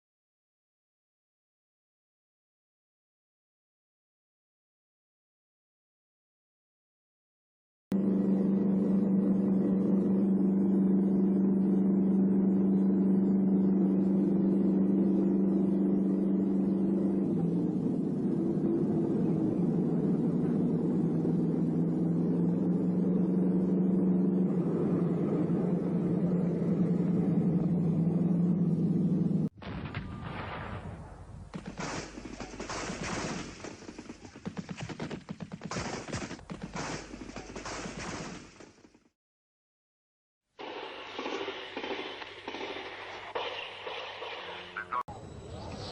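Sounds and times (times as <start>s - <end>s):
loud engine drone: 7.9s - 29.5s, 40.6s - 45.9s.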